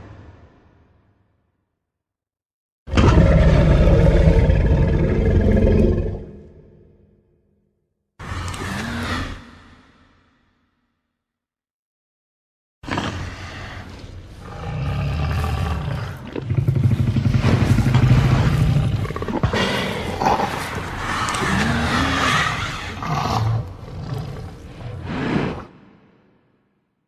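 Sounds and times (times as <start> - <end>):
dinosaur roars and growls: 2.9 - 7.0, 8.2 - 10.4, 12.8 - 26.1.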